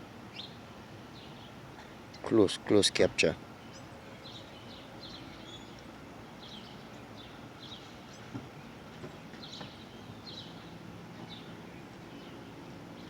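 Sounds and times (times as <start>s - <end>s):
outdoor background noise: 0.0s - 13.0s
small birds chirping: 0.3s - 2.5s, 3.4s - 13.0s.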